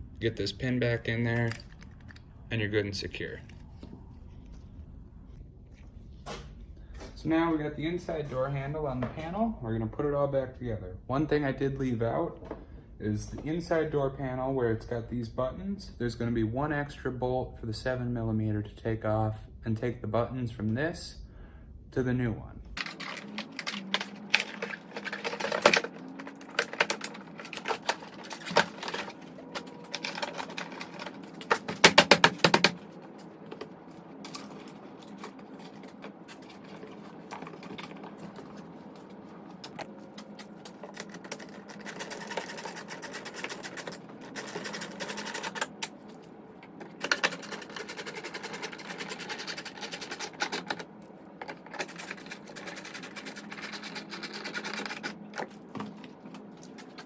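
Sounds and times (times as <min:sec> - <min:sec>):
scraping of parts handled: 0:22.8 - 0:57.0.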